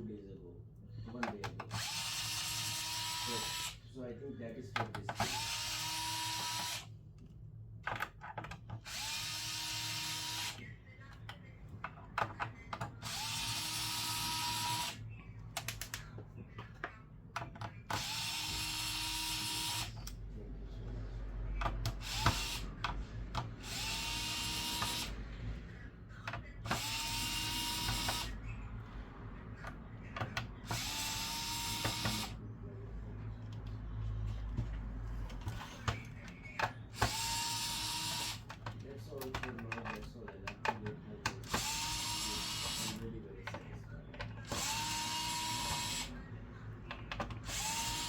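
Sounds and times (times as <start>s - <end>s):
electric screwdriver motor whine: 1.8s - 3.8s, 5.2s - 6.9s, 8.9s - 10.6s, 13.0s - 15.0s, 18.0s - 20.0s, 22.0s - 22.6s, 23.6s - 25.1s, 26.7s - 28.3s, 30.7s - 32.4s, 37.0s - 38.4s, 41.5s - 42.9s, 44.5s - 46.1s, 47.4s - 48.0s.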